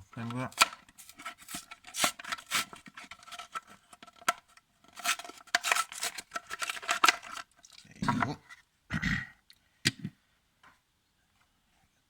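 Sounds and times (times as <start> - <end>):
plastic and cardboard crinkling: 0.1 - 8.2.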